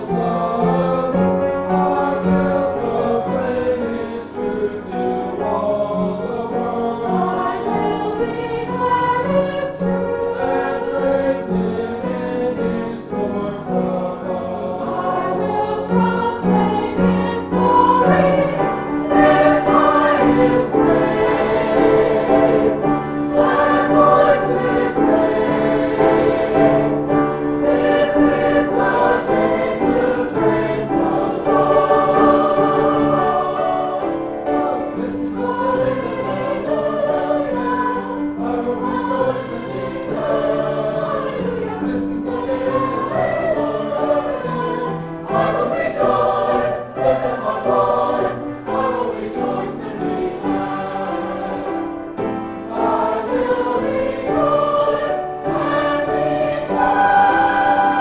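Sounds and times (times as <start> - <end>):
choir singing sustained chords: 0.0 - 58.0.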